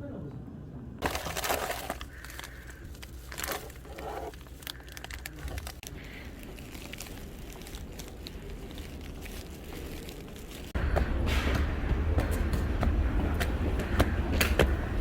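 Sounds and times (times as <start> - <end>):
crinkling and rustling: 1.0 - 10.8
small clicks and crackles: 1.2 - 10.8.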